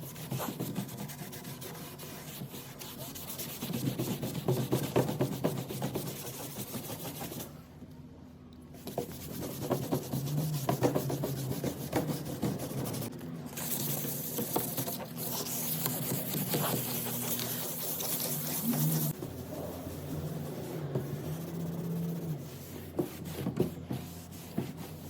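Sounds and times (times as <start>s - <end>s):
sanding wood: 13.7s - 25.0s.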